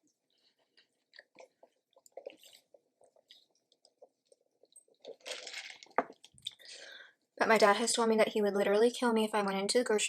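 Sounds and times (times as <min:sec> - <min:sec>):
person chewing food: 0:00.0 - 0:06.7.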